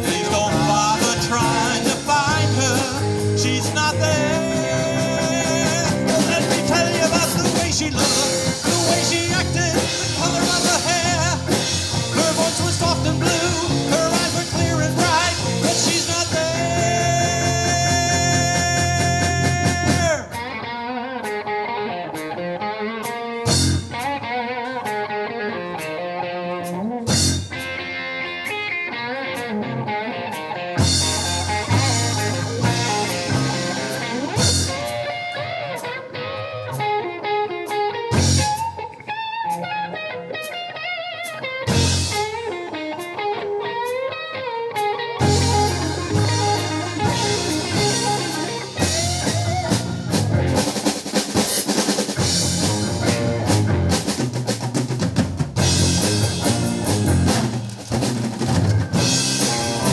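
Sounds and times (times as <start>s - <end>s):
full band chord: 0.0s - 20.1s, 30.8s - 35.0s, 41.7s - 42.4s, 45.2s - 50.8s, 58.8s - 59.9s
keyboards: 0.0s - 20.4s, 23.0s - 24.2s, 30.3s - 36.0s, 37.7s - 38.8s, 41.6s - 42.5s, 44.8s - 59.9s
bass guitar: 0.0s - 40.5s, 41.2s - 44.0s, 44.7s - 59.9s
electric guitar lead: 0.0s - 54.6s, 55.5s - 59.9s
drums: 0.0s - 59.9s.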